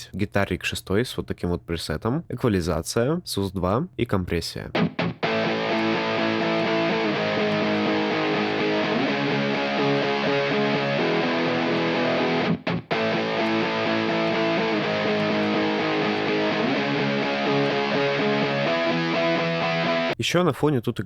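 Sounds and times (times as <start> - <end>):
distorted electric guitar chords: 4.8 - 20.2.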